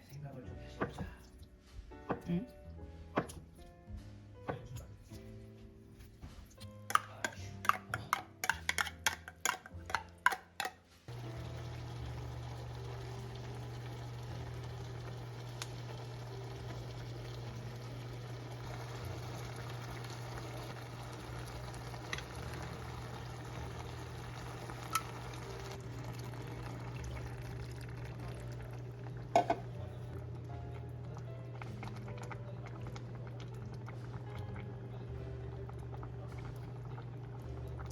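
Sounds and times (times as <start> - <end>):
utensil taps: 6.8 - 10.8, 29.4 - 29.7
food sizzling in a pan: 11.1 - 28.6.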